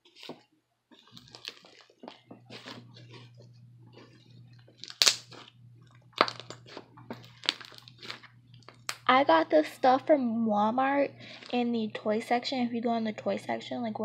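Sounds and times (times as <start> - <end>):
faint low hum: 0.0 - 14.0
slime crackling and popping: 1.0 - 2.8, 4.0 - 5.5, 6.1 - 9.1.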